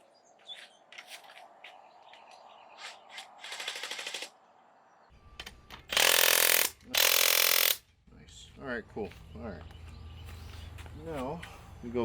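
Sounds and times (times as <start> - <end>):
impact wrench hammering on bolts: 5.9 - 7.8.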